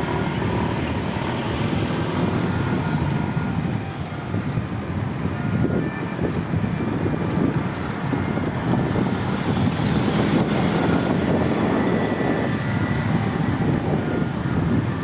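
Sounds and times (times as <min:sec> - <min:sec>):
vehicle passing close: 0:00.0 - 0:03.8, 0:07.4 - 0:15.0
roadside traffic: 0:00.0 - 0:15.0
wind buffeting microphone: 0:00.0 - 0:15.0.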